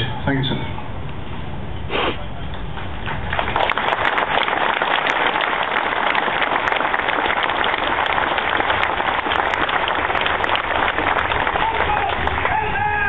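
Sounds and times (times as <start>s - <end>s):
crowd applauding: 2.8s - 13.0s.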